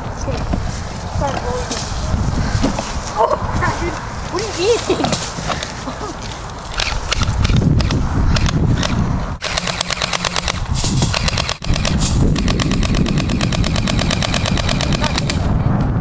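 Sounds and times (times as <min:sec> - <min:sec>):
airsoft guns firing full auto: 0:09.4 - 0:10.6, 0:11.2 - 0:15.4.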